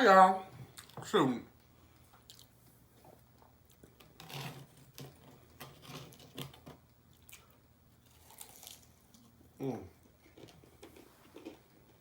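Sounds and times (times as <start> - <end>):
chewing crispy fried food: 2.0 - 4.0, 6.0 - 12.0.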